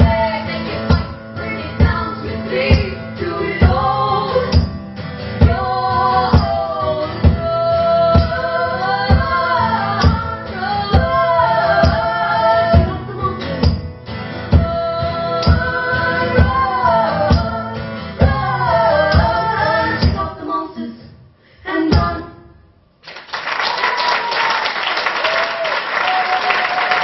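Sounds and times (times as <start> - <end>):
voices singing in harmony: 0.0 - 4.6, 5.4 - 13.6, 14.6 - 21.0
steady drum beat: 0.0 - 20.3.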